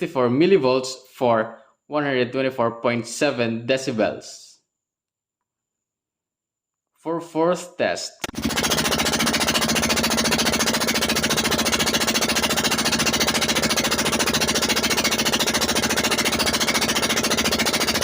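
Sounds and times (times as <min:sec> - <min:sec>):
boat engine chugging: 0:08.2 - 0:18.0.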